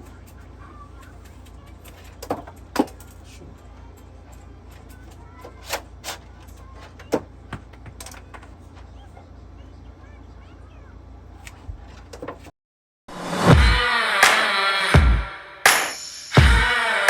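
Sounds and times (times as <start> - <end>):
objects clicking and knocking: 1.0 - 8.9.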